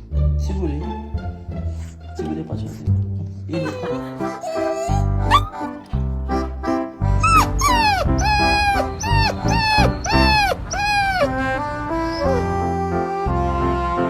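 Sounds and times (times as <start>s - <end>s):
background music: 0.0s - 14.0s
dog crying out: 3.6s - 5.8s, 7.2s - 11.5s, 12.1s - 12.5s.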